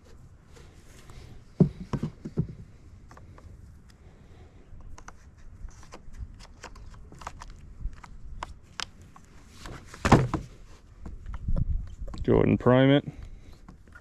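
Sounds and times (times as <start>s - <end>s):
light clicks taps and scrapes: 4.8s - 9.8s.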